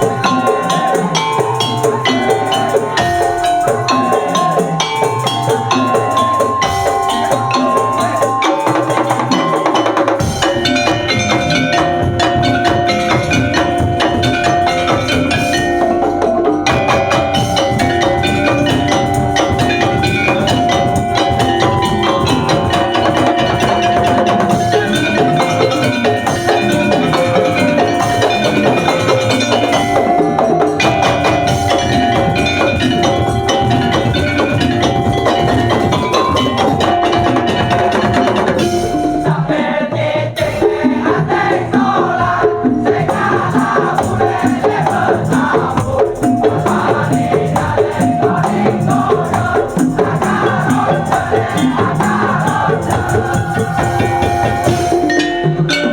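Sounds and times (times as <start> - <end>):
pitched melody: 0.0 - 39.7, 44.8 - 55.9
wooden percussion ensemble: 0.0 - 55.9.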